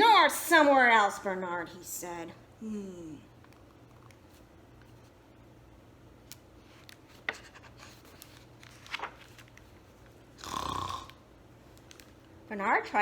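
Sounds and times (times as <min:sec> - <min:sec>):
paper pages rustling: 0:06.3 - 0:10.2
page turning swish: 0:06.7 - 0:09.8.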